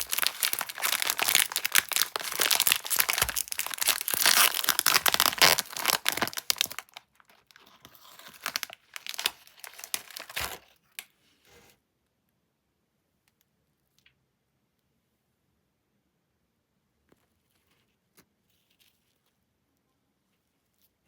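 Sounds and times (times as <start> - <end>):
biscuit packaging crinkling: 0.0 - 11.1.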